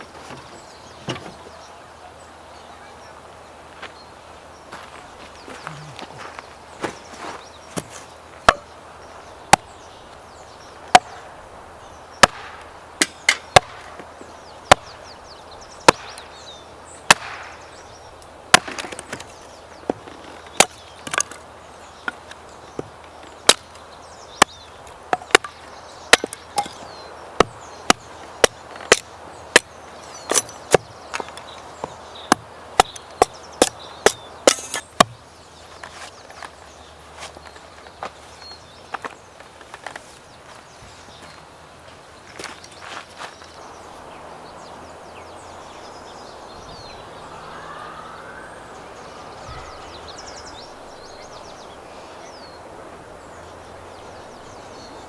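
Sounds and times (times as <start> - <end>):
chopping knocks: 7.8 - 8.7, 24.4 - 26.8, 27.4 - 35.2.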